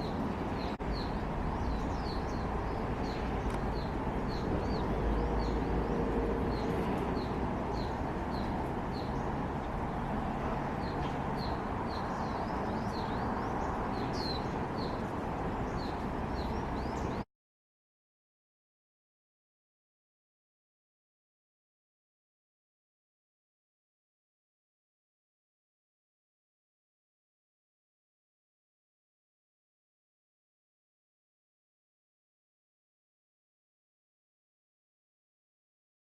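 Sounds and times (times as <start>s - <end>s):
small bird chirping: 10.8s - 17.2s.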